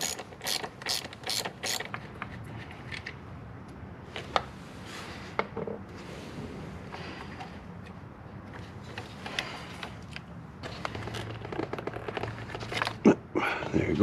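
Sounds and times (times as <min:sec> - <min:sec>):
hand ratchet clicking: 0:00.0 - 0:02.0.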